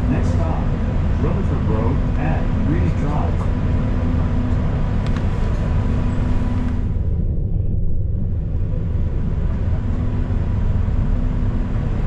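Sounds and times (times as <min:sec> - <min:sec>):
bus engine rumble: 0:00.0 - 0:12.0
road noise: 0:00.0 - 0:12.0.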